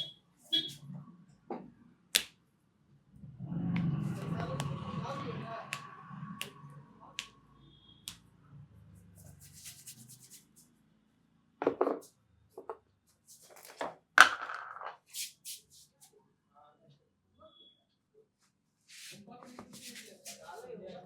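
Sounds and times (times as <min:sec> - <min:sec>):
hands rubbing hair and skin: 0:09.1 - 0:10.7, 0:18.9 - 0:20.6.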